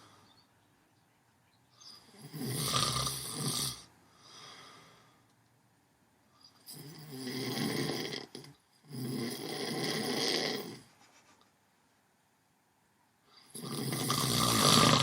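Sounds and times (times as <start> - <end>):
faint breath: 0.0 - 0.5, 4.0 - 5.4
loud rasping snore: 2.0 - 3.9, 6.7 - 10.9, 13.5 - 15.0.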